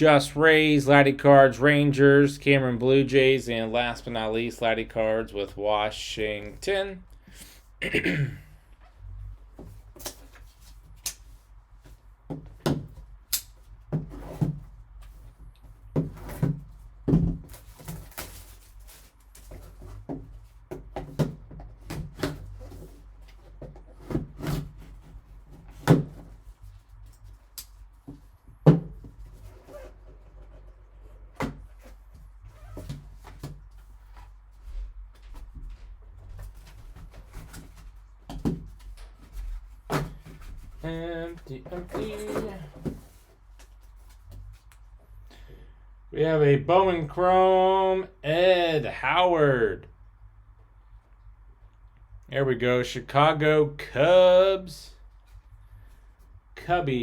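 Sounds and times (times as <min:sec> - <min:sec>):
cardboard and wrapper rustling: 0:13.9 - 0:44.7.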